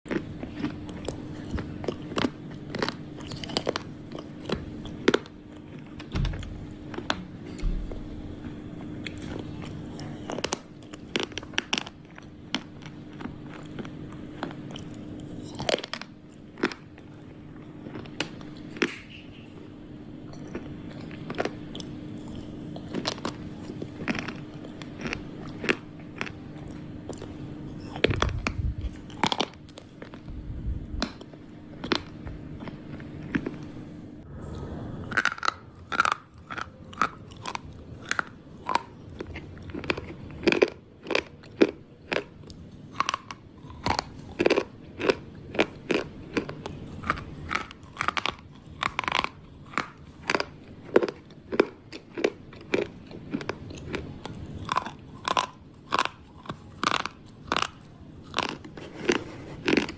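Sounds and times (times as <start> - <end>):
low hum: 0.1 - 51.5
slate pencils crunching: 20.6 - 30.3, 35.0 - 59.9.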